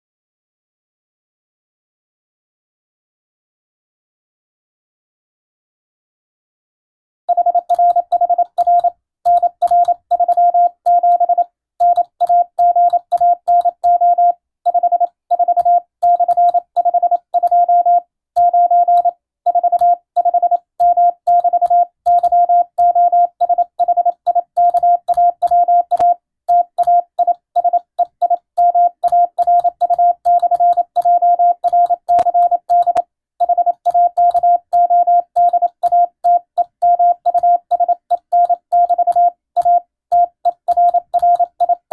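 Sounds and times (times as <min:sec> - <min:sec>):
morse code tone: 0:07.3 - 0:41.9.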